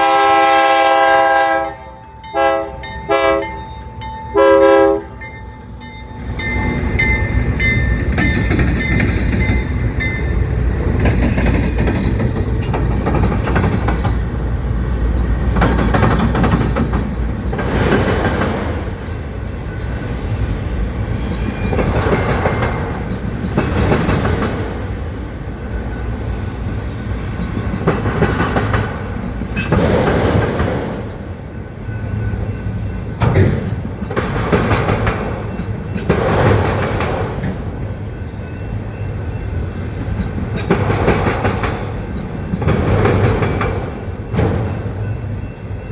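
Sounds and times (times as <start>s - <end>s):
freight train rumbling past: 0.0s - 45.9s
wheels clattering over rail joints: 6.2s - 19.1s, 27.4s - 31.2s, 33.2s - 37.8s, 40.0s - 45.5s.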